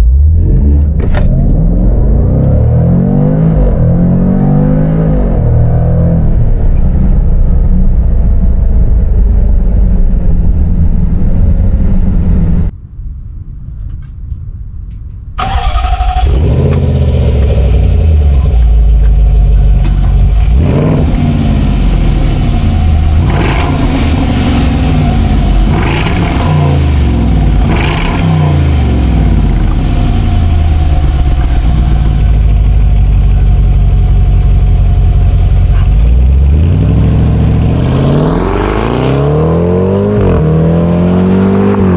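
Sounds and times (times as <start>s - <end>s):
car engine accelerating hard: 0.0s - 12.7s, 15.4s - 41.9s
exhaust crackles: 13.6s - 39.1s.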